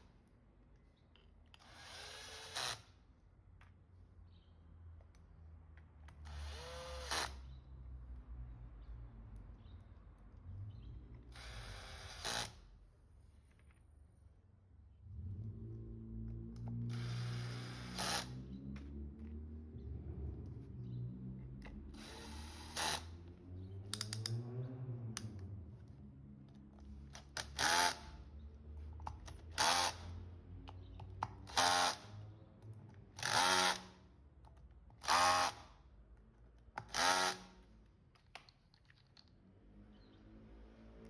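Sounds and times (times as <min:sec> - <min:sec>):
cordless electric screwdriver: 0:01.6 - 0:03.0, 0:06.2 - 0:07.4, 0:11.3 - 0:12.6, 0:16.9 - 0:18.5, 0:21.9 - 0:23.2, 0:27.2 - 0:28.1, 0:29.6 - 0:30.1, 0:31.5 - 0:32.1, 0:33.2 - 0:33.9, 0:35.0 - 0:35.7, 0:36.8 - 0:37.5.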